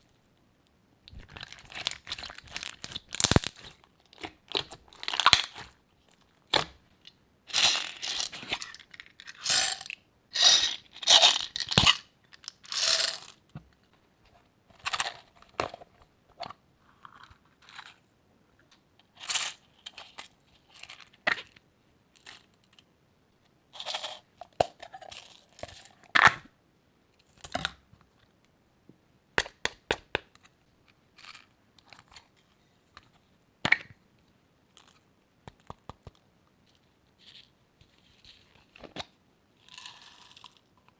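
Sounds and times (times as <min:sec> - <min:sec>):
crunchy slime squished by hand: 0:01.2 - 0:05.7.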